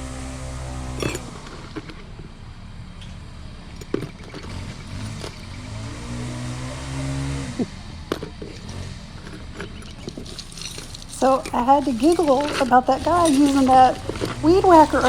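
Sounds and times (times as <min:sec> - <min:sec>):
handling clicks and knocks: 0:00.9 - 0:06.0, 0:07.5 - 0:15.0
string trimmer engine revving: 0:04.5 - 0:09.6.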